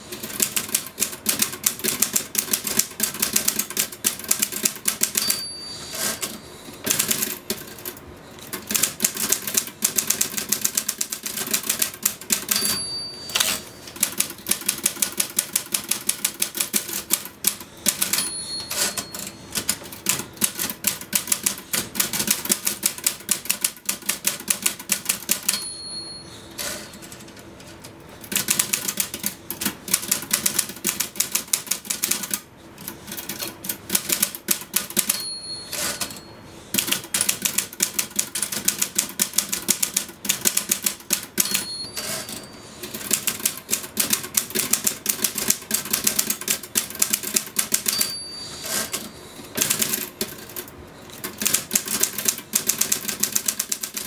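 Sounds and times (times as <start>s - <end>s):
typewriter keystrokes: 0.2s - 5.4s, 6.0s - 7.9s, 8.5s - 12.8s, 13.4s - 25.6s, 26.6s - 49.0s, 49.6s - 54.0s
typewriter bell: 4.3s - 7.3s, 9.4s - 15.0s, 17.8s - 19.8s, 24.6s - 27.2s, 34.0s - 36.5s, 40.8s - 43.5s, 47.0s - 50.0s.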